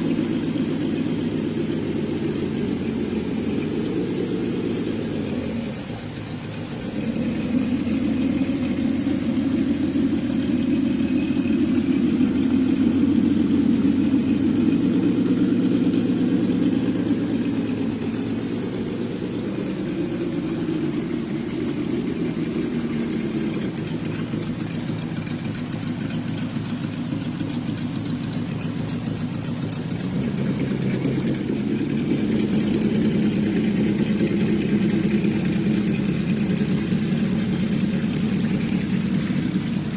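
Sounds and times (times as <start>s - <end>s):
high-pitched whine: 0.0s - 39.9s
simulated engine idling and revving: 0.0s - 39.9s.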